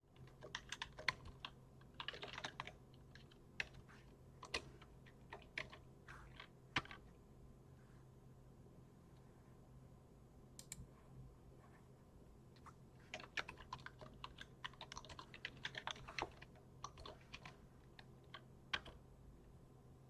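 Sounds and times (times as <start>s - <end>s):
typing on computer keyboard: 0.1s - 7.0s, 13.1s - 19.0s.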